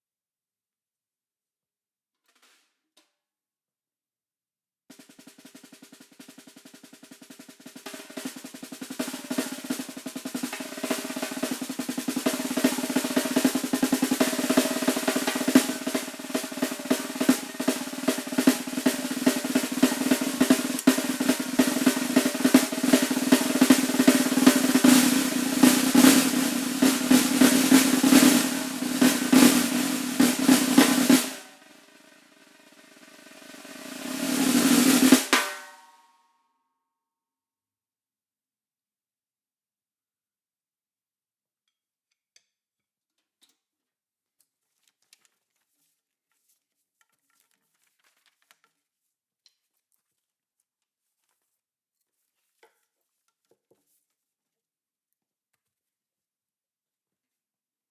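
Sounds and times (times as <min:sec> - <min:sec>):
snare drum roll: 0:04.9 - 0:36.0.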